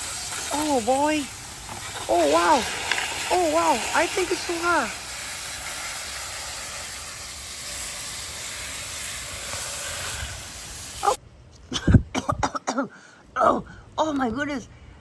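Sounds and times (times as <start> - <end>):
water spraying: 0.0 - 11.2.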